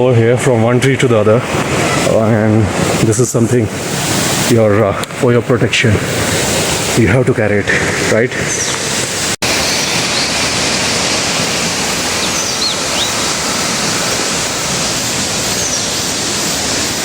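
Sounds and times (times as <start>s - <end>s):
water rushing: 0.0s - 17.0s
faint bird chirps: 12.1s - 13.2s, 15.4s - 16.5s.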